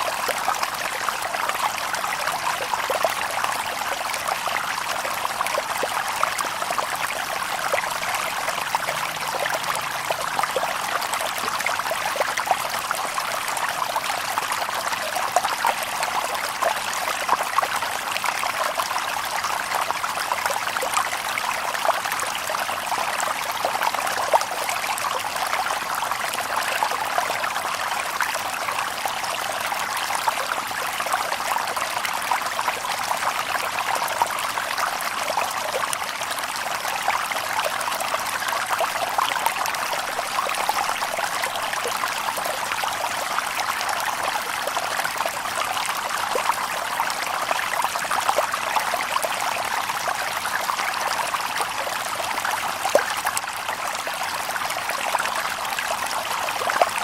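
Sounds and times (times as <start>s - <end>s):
stream babbling over stones: 0.0s - 57.0s.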